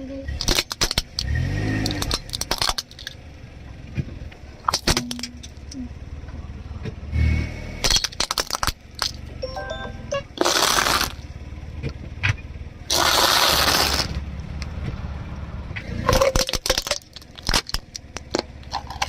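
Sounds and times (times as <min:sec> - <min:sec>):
car engine humming: 0:00.0 - 0:19.0
sharp cracks: 0:00.3 - 0:03.2, 0:04.6 - 0:05.7, 0:07.8 - 0:09.2, 0:12.9 - 0:14.2, 0:16.1 - 0:19.0
tyre crushing objects: 0:12.9 - 0:14.2.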